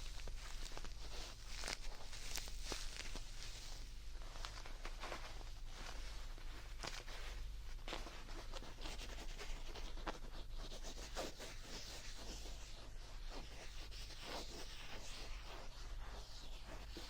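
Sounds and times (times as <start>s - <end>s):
faint low hum: 0.0s - 17.0s
scratching on plush toy: 0.0s - 17.0s.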